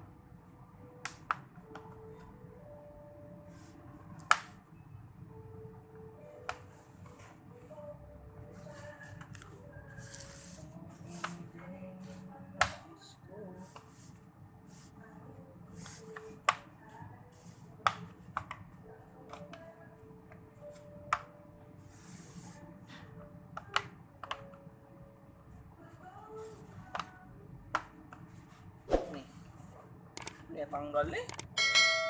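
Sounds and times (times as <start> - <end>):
plastic clicks and snaps: 30.2 - 30.4, 31.3 - 31.5.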